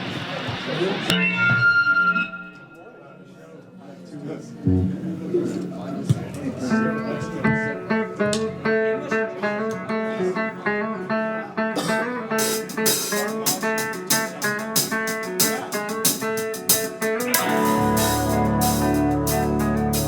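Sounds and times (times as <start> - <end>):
full band with bass: 4.7 - 5.2, 12.4 - 20.0
guitar picking a riff: 4.7 - 5.2, 7.5 - 20.0
cymbal strokes: 12.5 - 20.0.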